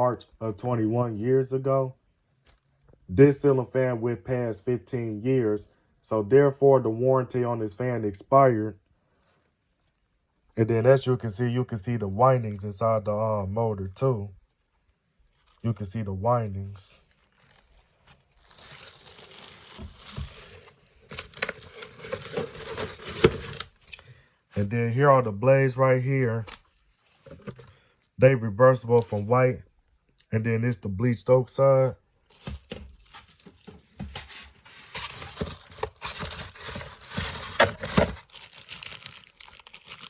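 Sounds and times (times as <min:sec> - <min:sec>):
packing material crinkling: 0:17.0 - 0:24.0, 0:32.3 - 0:40.0.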